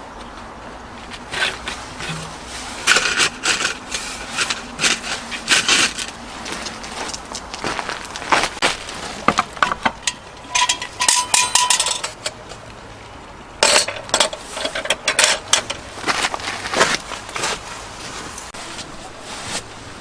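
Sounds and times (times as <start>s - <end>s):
cookware clinks and knocks: 9.3s - 12.4s
short metallic ring: 10.0s - 12.3s.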